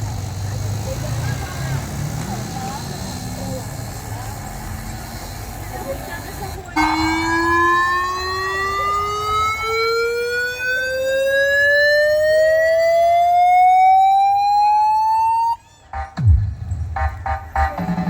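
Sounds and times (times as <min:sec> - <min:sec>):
rising sine sweep test tone: 0:06.8 - 0:15.6.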